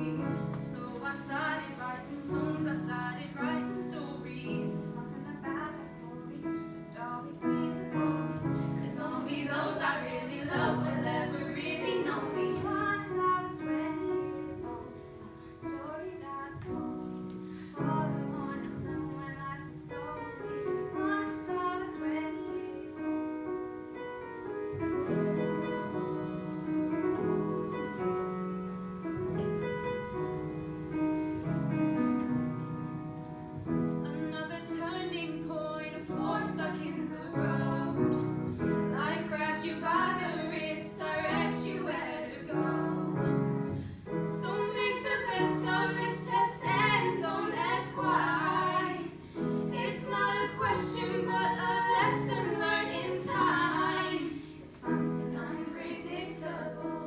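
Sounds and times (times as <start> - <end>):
woman singing: 0.0 - 17.0, 17.8 - 23.2, 34.0 - 57.0.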